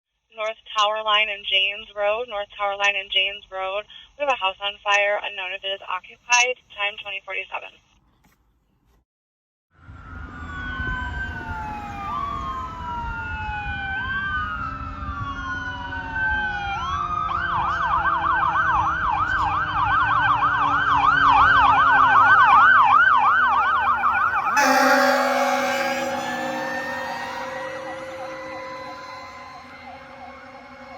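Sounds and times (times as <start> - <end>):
fire engine siren wailing and yelping: 9.9 - 23.6, 24.4 - 30.9
air horn blasts: 24.6 - 30.9.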